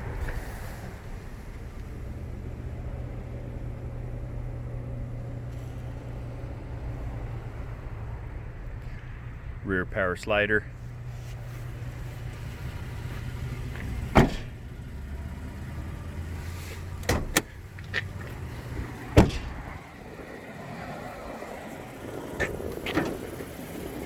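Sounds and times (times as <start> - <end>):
window motor hum: 1.4 - 8.6, 10.9 - 19.8
sharp clicks and knocks: 17.0 - 18.4.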